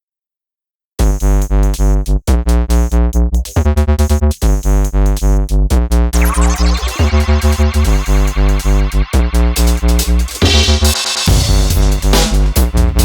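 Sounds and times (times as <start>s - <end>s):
drum-machine bass beat: 1.0s - 13.0s
synthesizer chords: 6.2s - 12.7s.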